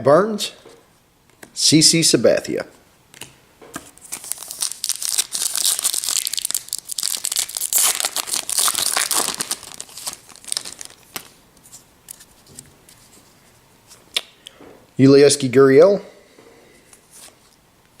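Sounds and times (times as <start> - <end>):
foil wrapper tearing and crinkling: 4.0 - 11.4.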